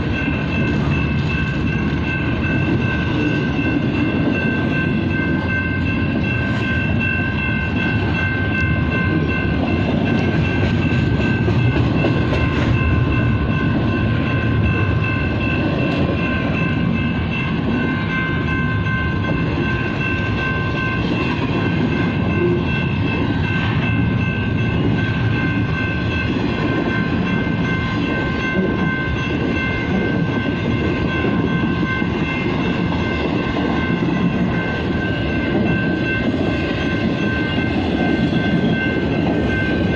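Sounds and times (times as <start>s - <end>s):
freight train wheels rumbling on rail: 0.0s - 39.9s.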